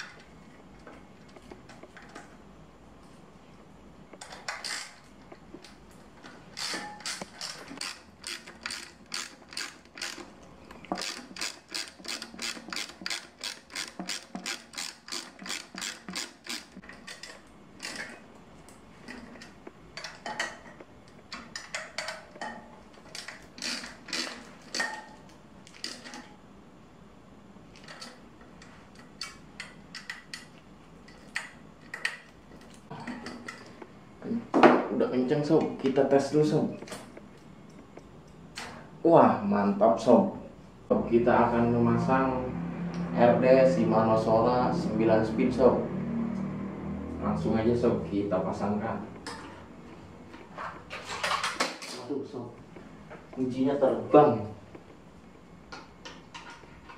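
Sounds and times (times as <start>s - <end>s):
ratchet wrench clicking: 6.6s - 10.3s, 10.9s - 18.1s.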